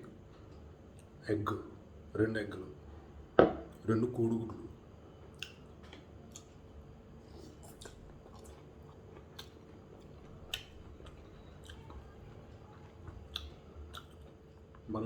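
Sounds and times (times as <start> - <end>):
person chewing food: 5.3 - 14.8.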